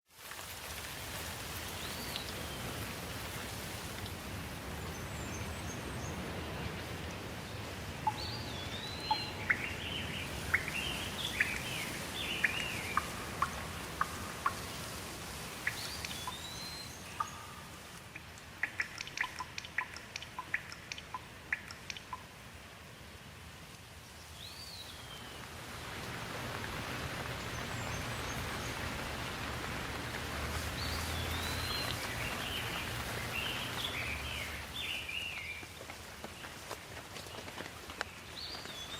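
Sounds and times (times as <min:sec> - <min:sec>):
steady rain: 0:00.0 - 0:38.9
birds whistling and chirping: 0:08.1 - 0:14.6, 0:15.6 - 0:17.6.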